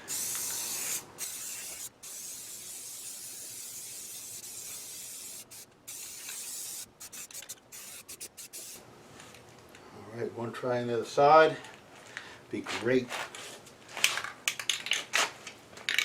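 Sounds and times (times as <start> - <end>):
spray paint hissing: 0.0 - 8.8.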